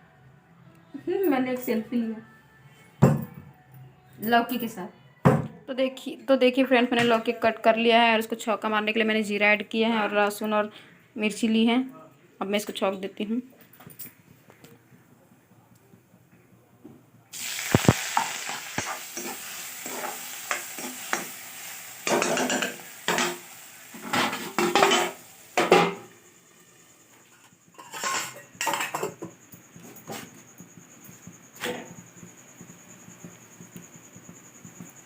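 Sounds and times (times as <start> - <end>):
food sizzling in hot oil: 17.3 - 29.1
spoon scraping and clattering in pan: 17.7 - 21.4, 22.0 - 26.1, 27.2 - 29.4.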